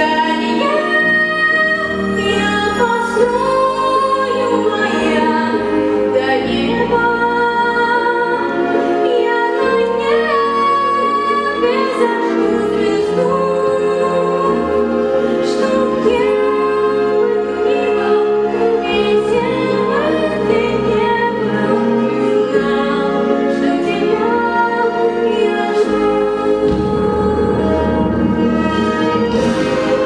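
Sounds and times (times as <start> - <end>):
sustained musical accompaniment: 0.0 - 30.0.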